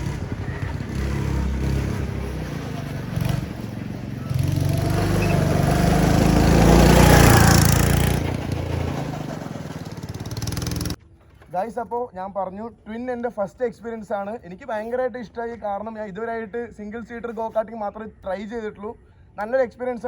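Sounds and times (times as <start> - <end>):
go-kart engine running: 0.0 - 11.0.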